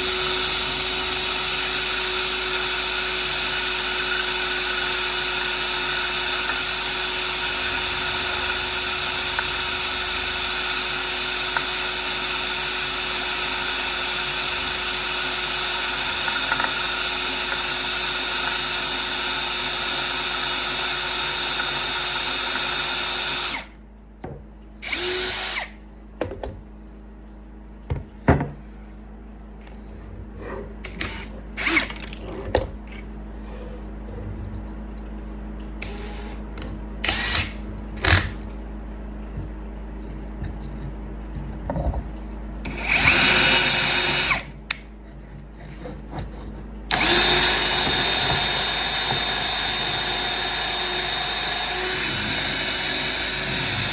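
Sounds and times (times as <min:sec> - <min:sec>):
electric drill whining: 0:00.0 - 0:23.8, 0:24.8 - 0:25.8, 0:31.0 - 0:32.3, 0:35.8 - 0:36.4, 0:37.0 - 0:38.4, 0:42.7 - 0:44.5, 0:46.9 - 0:53.9.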